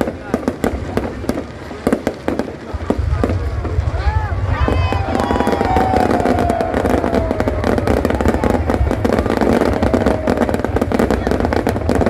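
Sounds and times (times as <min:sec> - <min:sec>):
fireworks crackling and popping: 0:00.0 - 0:12.0
low rumble: 0:02.6 - 0:11.9.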